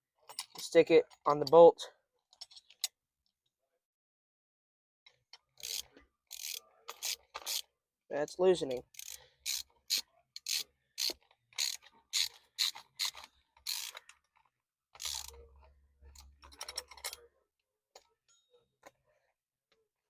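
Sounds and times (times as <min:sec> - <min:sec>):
hand ratchet clicking: 0:05.6 - 0:07.6, 0:08.9 - 0:14.2, 0:15.0 - 0:15.4.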